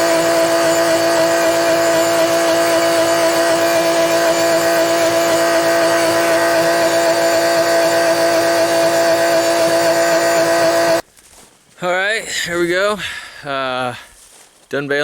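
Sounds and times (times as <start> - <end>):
tractor engine running with whine: 0.0 - 11.0.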